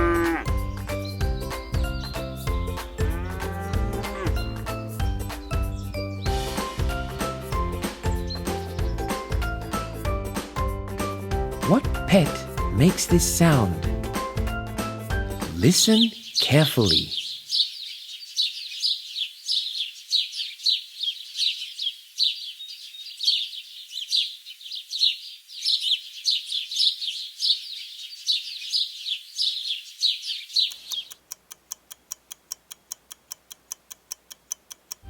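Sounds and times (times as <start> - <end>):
birds chirping: 0.0 - 10.2, 11.0 - 31.8
timer ticking: 30.7 - 35.0.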